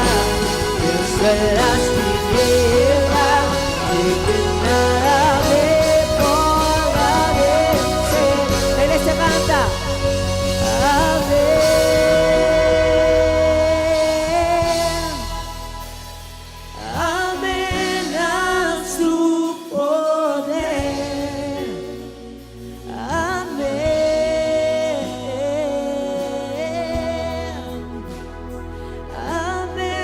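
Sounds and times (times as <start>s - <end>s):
sustained backing music: 0.0s - 30.0s.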